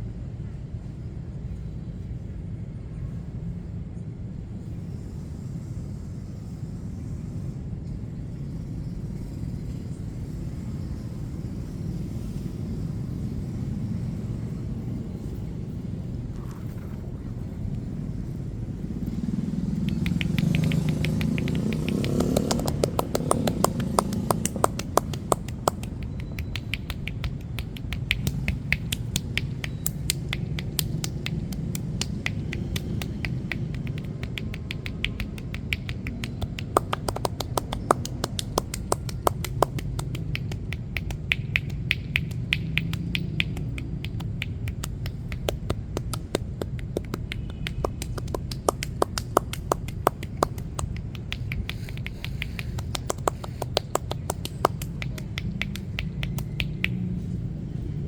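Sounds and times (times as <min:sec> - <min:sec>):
hands slapping body: 0:19.8 - 0:57.3.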